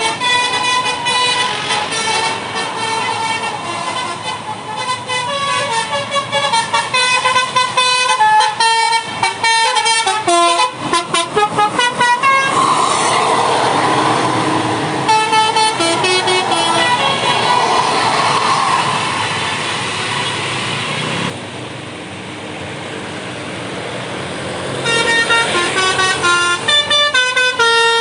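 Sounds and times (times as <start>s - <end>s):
bus multi-tone air horn tune: 0.0s - 12.8s, 14.5s - 18.8s, 24.8s - 28.0s
steady rushing noise: 12.5s - 22.8s.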